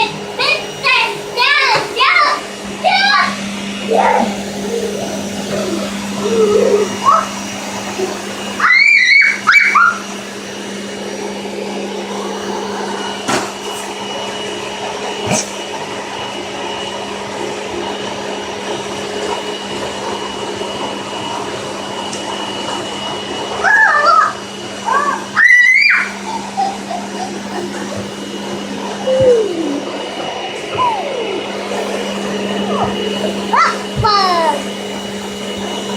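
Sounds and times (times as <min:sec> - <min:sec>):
high-pitched voice: 0:00.0 - 0:07.3, 0:29.0 - 0:29.9, 0:33.5 - 0:34.7
vacuum cleaner running: 0:00.0 - 0:35.9.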